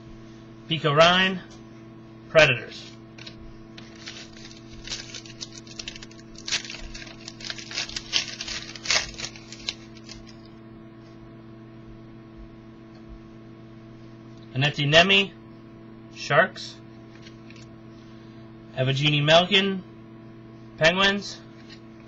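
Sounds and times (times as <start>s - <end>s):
cards and wrappers rustling: 3.2s - 10.5s.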